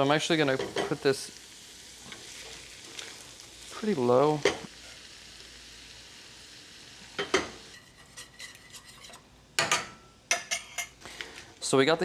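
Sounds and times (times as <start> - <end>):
food sizzling in a pan: 0.0 - 11.6
cookware clattering: 0.5 - 1.0, 4.4 - 4.7, 7.2 - 11.0.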